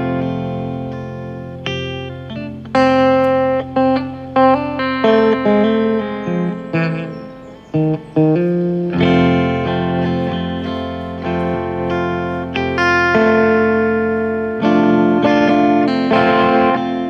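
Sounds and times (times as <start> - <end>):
plucked guitar notes: 0.0 - 17.0.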